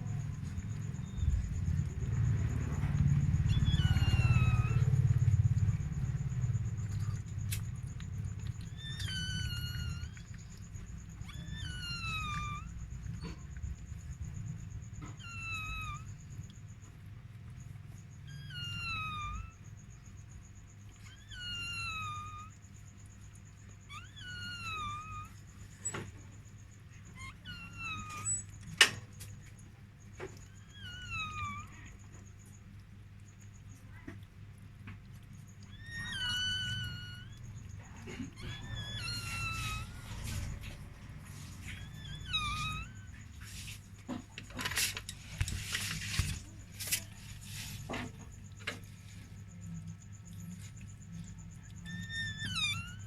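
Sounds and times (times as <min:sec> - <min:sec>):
low steady hum: 0:00.0 - 0:53.0
high-pitched dog whines: 0:02.9 - 0:05.1, 0:08.4 - 0:14.2, 0:15.0 - 0:16.3, 0:18.3 - 0:19.6, 0:20.9 - 0:22.6, 0:23.8 - 0:26.2, 0:27.0 - 0:28.7, 0:30.2 - 0:32.2, 0:35.6 - 0:53.0
puppy squealing: 0:03.2 - 0:05.1, 0:08.4 - 0:13.4, 0:15.0 - 0:16.2, 0:18.3 - 0:19.6, 0:23.9 - 0:26.0, 0:27.0 - 0:28.6, 0:30.4 - 0:31.9, 0:35.6 - 0:43.8, 0:51.6 - 0:53.0.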